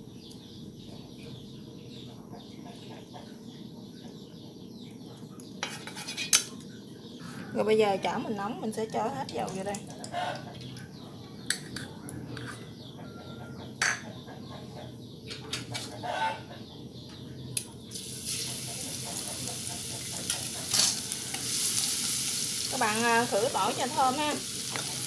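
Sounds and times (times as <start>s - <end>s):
utensils knocking against pans: 13.8s - 14.1s, 18.6s - 21.5s
garlic sizzling in hot oil: 17.9s - 25.0s.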